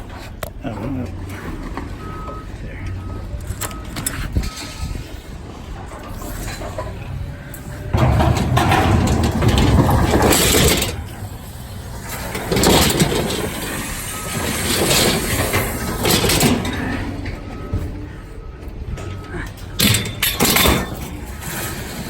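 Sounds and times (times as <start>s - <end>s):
scrap metal clattering: 3.6s - 22.0s
low rumble: 7.7s - 14.9s.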